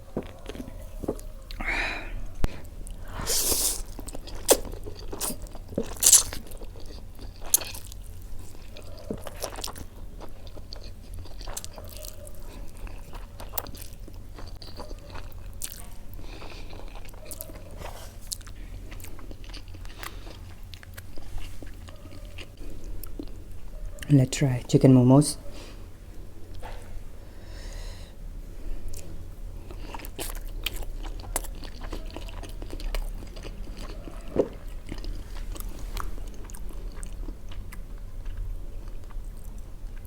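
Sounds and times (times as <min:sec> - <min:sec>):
chewing with small crackles: 0:00.0 - 0:24.5, 0:28.6 - 0:40.0
crunching bites: 0:03.4 - 0:07.8.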